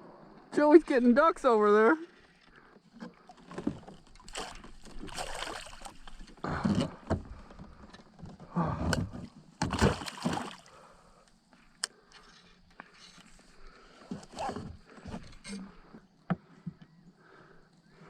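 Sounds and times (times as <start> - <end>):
kayak paddle splashes: 2.1 - 7.8, 8.8 - 11.1.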